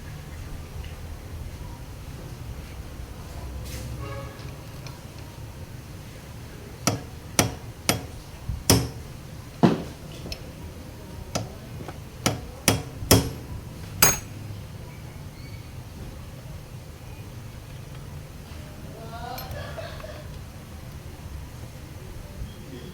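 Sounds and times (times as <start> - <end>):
hammer striking metal: 6.9 - 9.2, 11.4 - 14.4.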